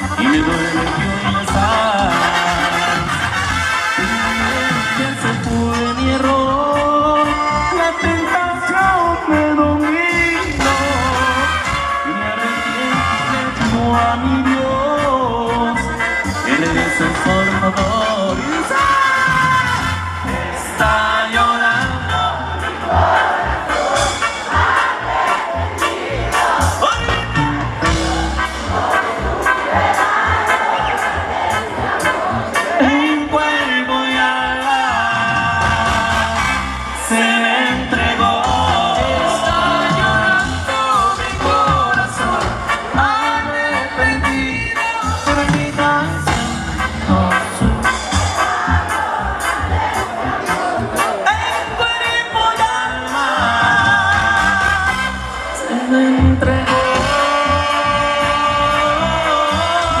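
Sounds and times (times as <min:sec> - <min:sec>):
bass: 0:00.0 - 1:00.0
drums: 0:00.0 - 1:00.0
live band playing: 0:00.0 - 1:00.0.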